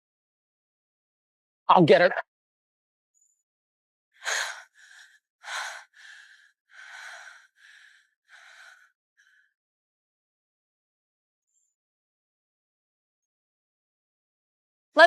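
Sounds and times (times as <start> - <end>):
person breathing hard: 4.2 - 9.6.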